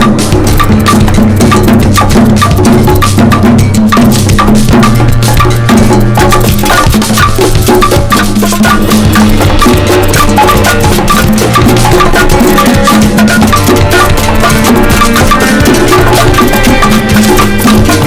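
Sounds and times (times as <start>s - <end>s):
loud percussive music: 0.0s - 18.0s
sustained bass: 0.0s - 18.0s
wood-block-like clicks: 0.0s - 18.0s.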